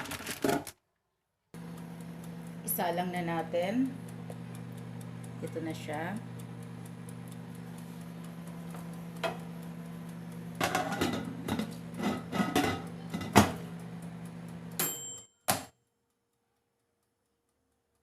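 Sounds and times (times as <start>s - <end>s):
low electrical hum: 1.6s - 15.0s
clunk: 10.6s - 13.6s
kitchen equipment clattering: 10.6s - 13.6s.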